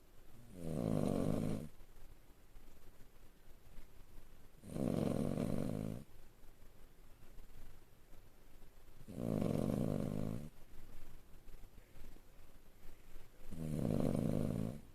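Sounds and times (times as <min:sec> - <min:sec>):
dog snoring: 0:00.4 - 0:01.7, 0:04.6 - 0:06.1, 0:09.0 - 0:10.5, 0:13.5 - 0:14.9.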